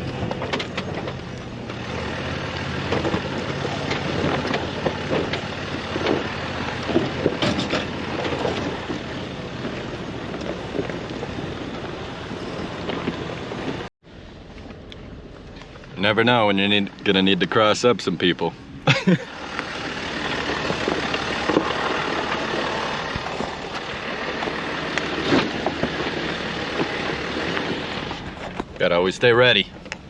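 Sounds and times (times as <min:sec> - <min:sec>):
knocks and crackles: 0:00.0 - 0:13.9, 0:18.9 - 0:28.9
off-road vehicle engine running: 0:00.0 - 0:30.0.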